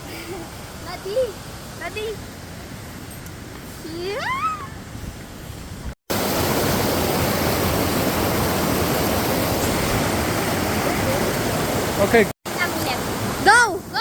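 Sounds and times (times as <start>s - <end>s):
waterfall roaring: 6.1s - 14.0s.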